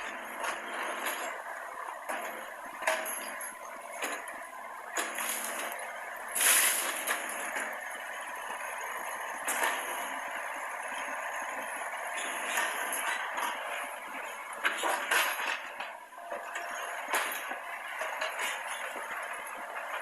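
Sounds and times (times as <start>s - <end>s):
mini excavator running: 0.0s - 20.0s.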